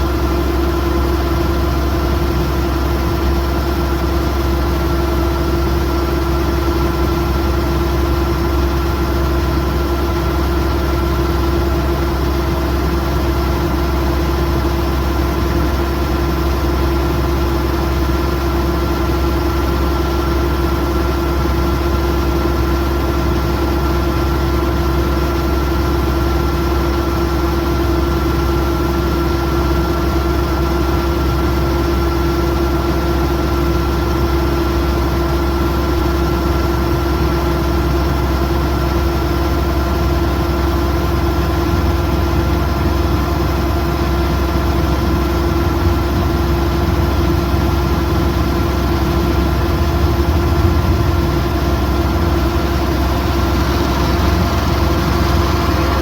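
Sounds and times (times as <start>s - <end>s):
combine harvester diesel engine: 0.0s - 56.0s
steady whining tone: 40.7s - 56.0s.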